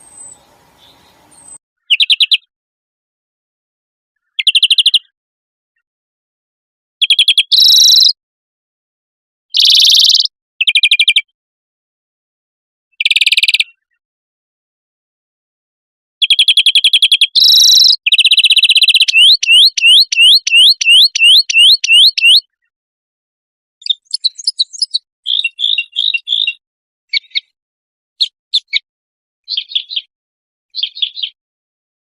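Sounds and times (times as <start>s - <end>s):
bird chirps and twitters: 0.0s - 2.5s, 4.2s - 5.1s, 7.0s - 8.2s, 9.5s - 11.3s, 13.0s - 14.0s, 16.2s - 22.7s, 23.8s - 27.6s, 28.2s - 30.1s, 30.7s - 31.4s
songbird trill and whistled notes: 0.0s - 2.5s, 4.2s - 5.0s, 7.0s - 8.2s, 9.5s - 11.2s, 16.2s - 22.7s, 23.8s - 27.6s, 28.2s - 30.1s, 30.7s - 31.4s.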